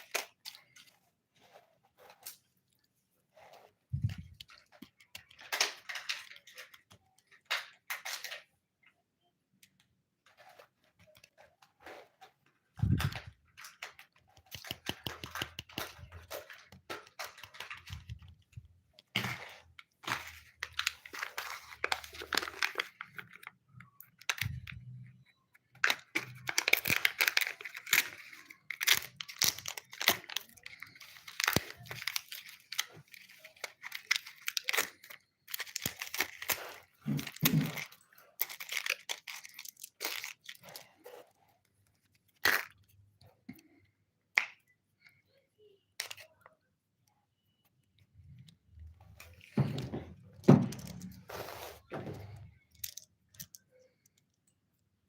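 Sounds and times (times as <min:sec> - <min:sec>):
plastic wrapper crinkling and tearing: 0:00.0 - 0:08.9, 0:10.2 - 0:43.0.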